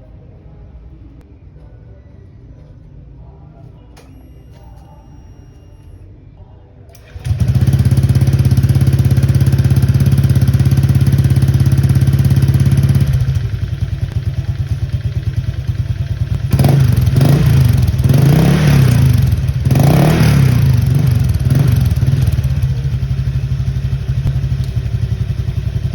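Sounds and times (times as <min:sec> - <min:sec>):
scooter engine idling and revving: 0:06.9 - 0:25.9.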